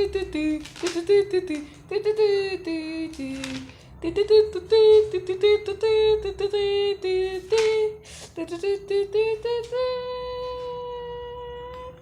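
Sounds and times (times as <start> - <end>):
person humming a tune: 0.0 - 12.0.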